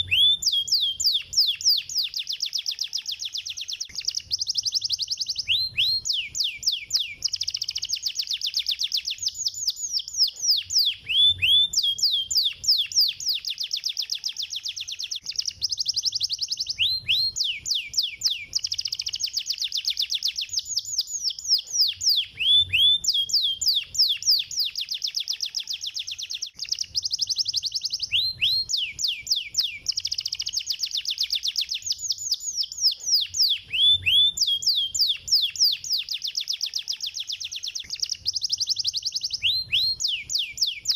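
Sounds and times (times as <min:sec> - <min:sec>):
canary singing trills: 0:00.0 - 0:40.9.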